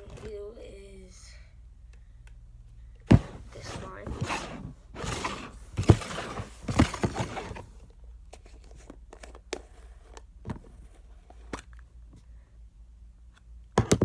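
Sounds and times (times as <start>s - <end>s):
container rustling and knocking: 3.1s - 7.8s.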